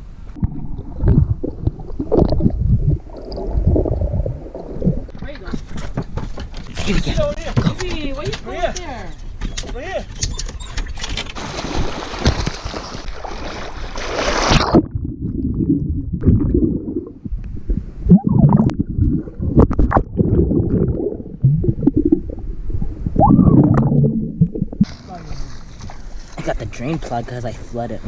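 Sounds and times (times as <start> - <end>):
water sloshing and gurgling: 0.3 - 7.2, 10.4 - 27.3
water splashing hard: 11.4 - 15.0.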